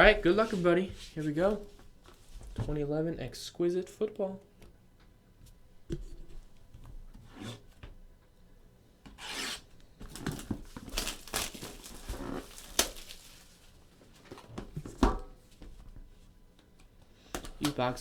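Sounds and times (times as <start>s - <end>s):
brushing rustle: 0.2s - 2.4s, 11.2s - 13.8s
cardboard rubbing and scraping: 9.2s - 13.7s.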